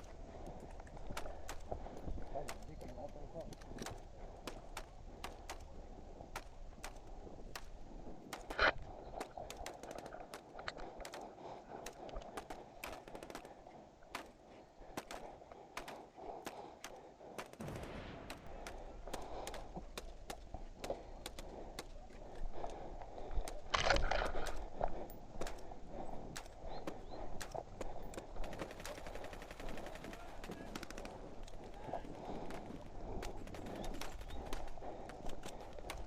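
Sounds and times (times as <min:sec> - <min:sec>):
airsoft guns firing: 0:14.1 - 0:21.9, 0:27.4 - 0:36.0.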